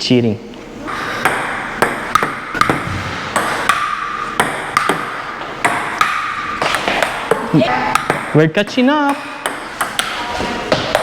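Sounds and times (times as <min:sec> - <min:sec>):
table tennis ball hitting paddles: 0:01.2 - 0:11.0.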